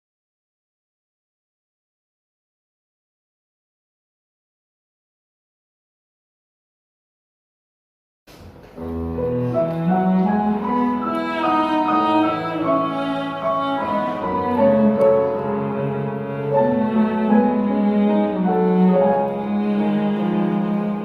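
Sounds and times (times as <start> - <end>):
piano and strings music: 8.3 - 21.0
cello line: 8.6 - 21.0.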